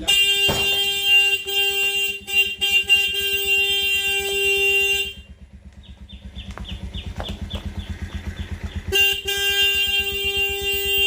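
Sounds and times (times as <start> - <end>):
vehicle horn held down: 0.0 - 5.3
engine low pulsing: 0.1 - 11.0.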